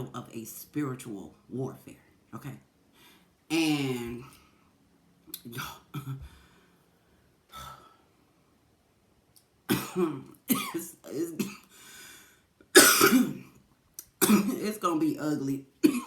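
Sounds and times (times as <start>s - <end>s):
woman clearing throat: 9.7s - 11.6s, 12.8s - 13.5s, 14.2s - 14.6s
woman coughing: 9.7s - 11.7s, 12.8s - 13.5s, 14.2s - 14.6s.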